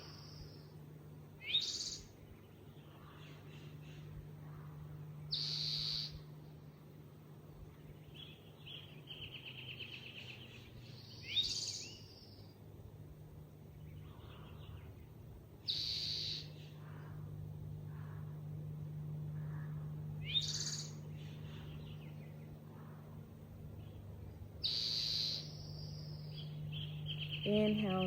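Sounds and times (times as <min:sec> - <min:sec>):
birds singing: 0:00.0 - 0:12.8, 0:13.4 - 0:28.0
steady low hum: 0:00.0 - 0:28.0
bird trill: 0:01.4 - 0:02.2, 0:02.8 - 0:06.4, 0:08.0 - 0:12.6, 0:15.6 - 0:23.1, 0:24.6 - 0:28.0.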